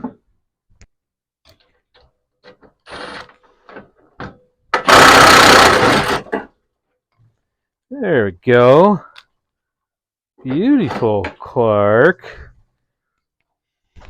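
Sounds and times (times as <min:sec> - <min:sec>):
loud mechanical rattle: 0:04.8 - 0:06.4.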